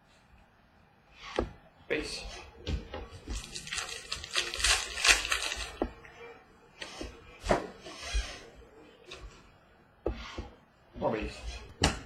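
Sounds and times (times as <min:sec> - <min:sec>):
cards rustling: 0:03.3 - 0:05.8.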